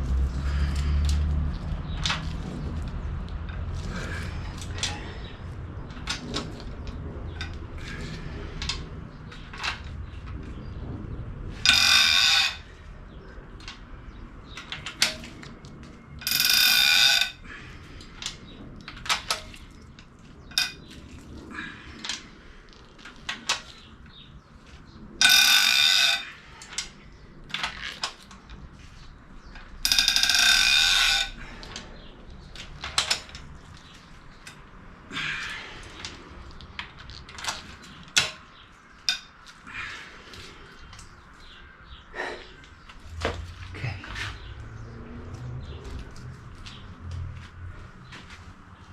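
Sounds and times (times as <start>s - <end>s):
tools and metal parts clicking: 0.7s - 5.1s, 5.8s - 10.4s, 11.6s - 12.7s, 14.5s - 17.4s, 18.2s - 21.4s, 22.0s - 24.2s, 25.2s - 28.8s, 29.4s - 34.7s, 35.4s - 39.6s.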